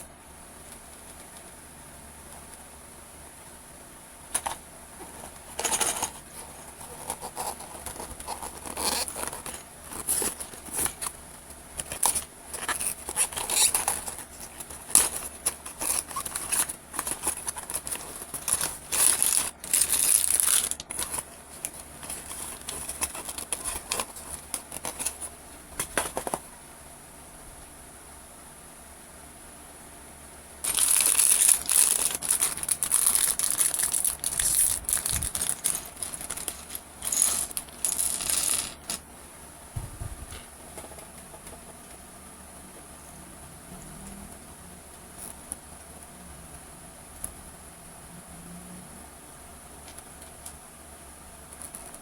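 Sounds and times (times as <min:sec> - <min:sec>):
faint steady high whine: 0:00.0 - 0:52.0
plastic packaging crinkling and tearing: 0:04.4 - 0:26.4, 0:30.6 - 0:39.0.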